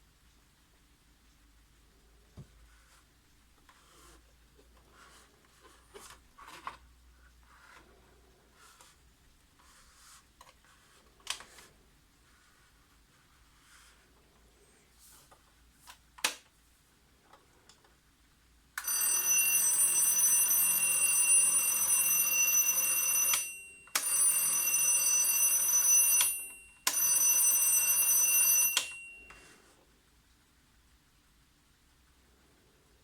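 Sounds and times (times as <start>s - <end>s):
alarm clock bell ringing: 18.8s - 29.5s.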